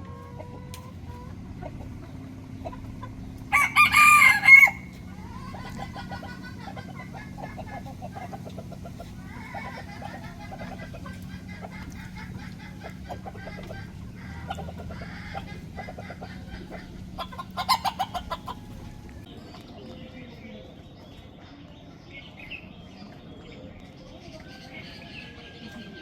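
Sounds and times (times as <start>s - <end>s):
chicken cackling: 0.0s - 19.3s, 24.1s - 26.0s
chickens clucking: 0.0s - 26.0s.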